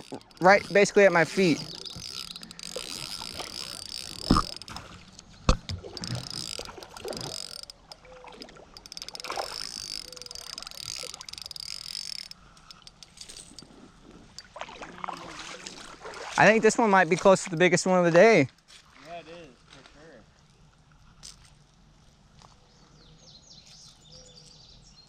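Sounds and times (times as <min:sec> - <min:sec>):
fishing reel cranking: 0:00.0 - 0:08.1, 0:08.7 - 0:14.5, 0:21.2 - 0:21.6.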